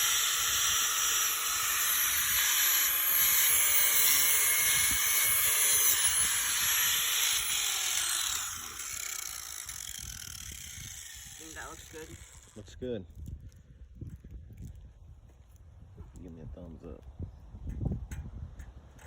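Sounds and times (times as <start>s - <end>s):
grinder wheel winding down: 0.0s - 12.6s
grinder wheel grinding steel: 0.0s - 13.3s.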